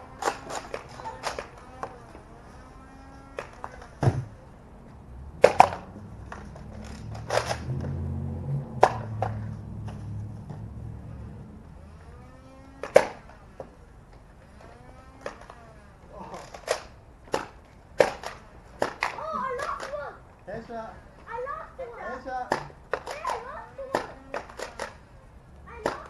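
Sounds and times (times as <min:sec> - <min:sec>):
toy blaster snaps: 0:00.2 - 0:02.0, 0:12.8 - 0:13.3, 0:16.4 - 0:20.0, 0:22.5 - 0:25.0, 0:25.8 - 0:26.0
low rumble: 0:04.9 - 0:11.8.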